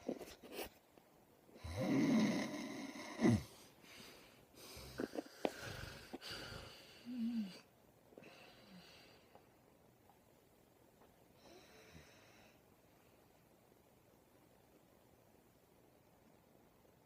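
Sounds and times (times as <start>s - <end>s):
quiet uneven breaths: 0.0s - 13.9s
person snoring loudly: 1.6s - 3.5s
person snorting: 1.6s - 3.6s, 4.6s - 7.7s.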